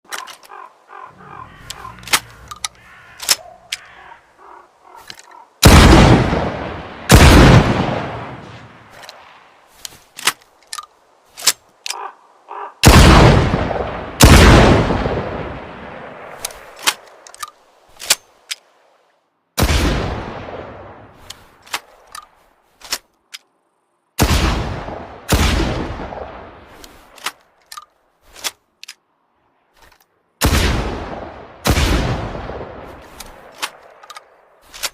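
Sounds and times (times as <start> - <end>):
shotgun action clicking: 1.6 - 3.9, 33.1 - 34.9.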